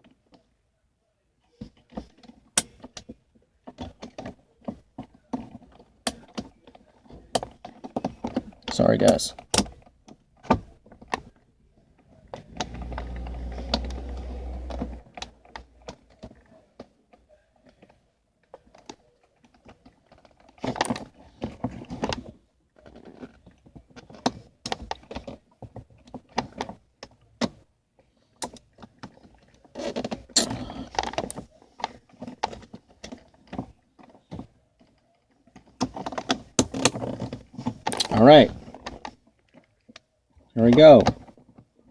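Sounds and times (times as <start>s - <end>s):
plastic parts clicking and rattling: 12.1s - 27.6s, 28.4s - 41.7s.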